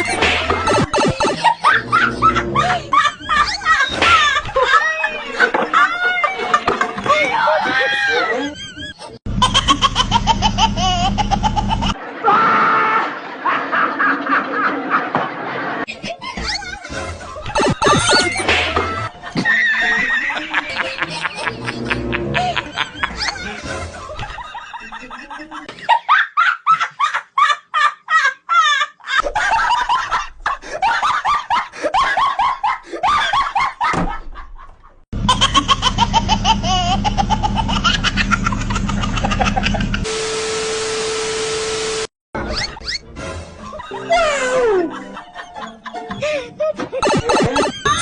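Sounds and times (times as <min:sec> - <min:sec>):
people laughing: 0:00.0 - 0:40.1, 0:43.5 - 0:48.0
music: 0:21.0 - 0:24.2, 0:42.4 - 0:46.8.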